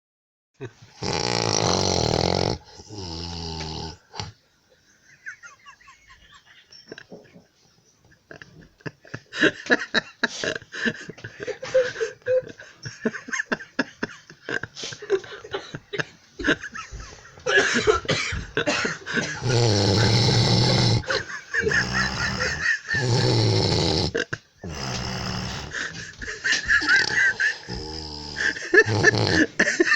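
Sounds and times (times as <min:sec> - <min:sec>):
person snoring: 0:00.9 - 0:04.4, 0:19.2 - 0:26.2, 0:26.8 - 0:29.7.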